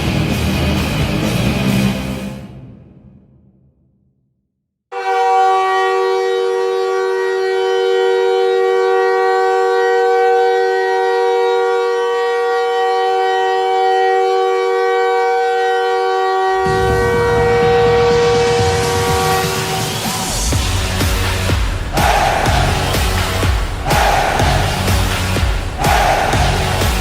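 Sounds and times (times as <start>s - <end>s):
loud music and noise: 0.0s - 3.1s, 16.6s - 27.0s
goal horn chord blast: 4.9s - 27.0s.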